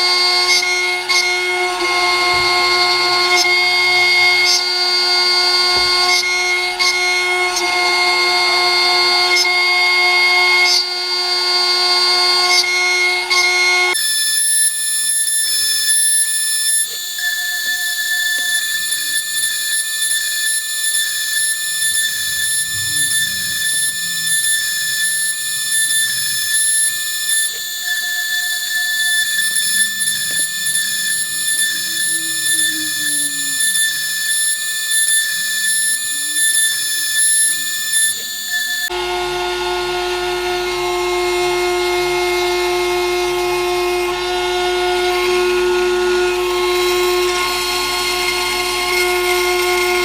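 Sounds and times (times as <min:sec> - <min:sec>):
spindle high-pitched whine: 0:13.9 - 0:50.0
low motor tones: 0:17.6 - 0:39.7.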